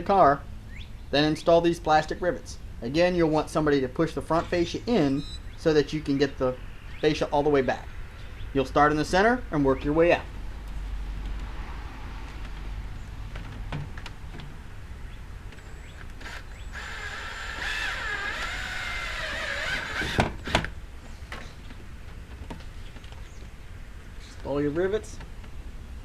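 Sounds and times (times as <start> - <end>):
electric drill whining: 16.2 - 20.7.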